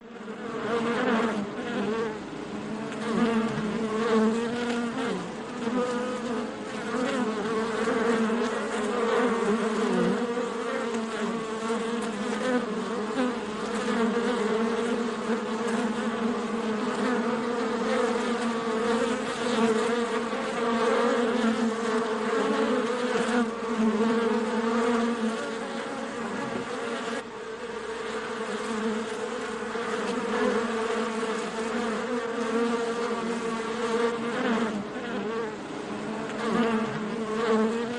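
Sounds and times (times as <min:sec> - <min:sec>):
bees buzzing: 0:00.1 - 0:37.9.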